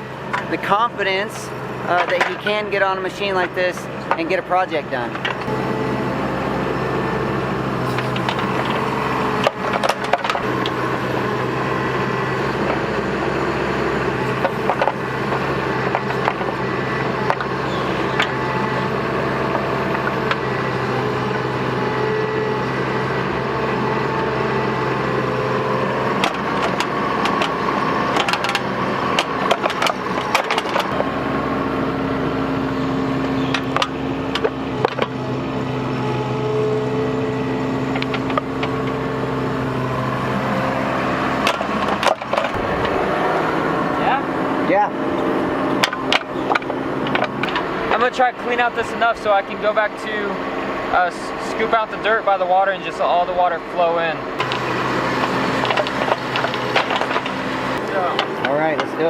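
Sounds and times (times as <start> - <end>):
excavator diesel engine running: 0.0 - 59.0
machine knocks and clanks: 7.9 - 10.9, 40.3 - 43.8, 54.4 - 59.0.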